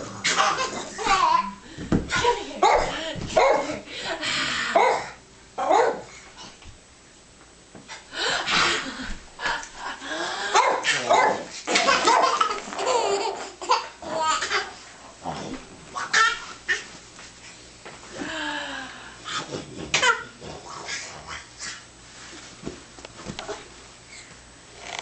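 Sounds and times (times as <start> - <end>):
dog barking: 2.6 - 3.7, 4.8 - 6.1, 10.5 - 11.5.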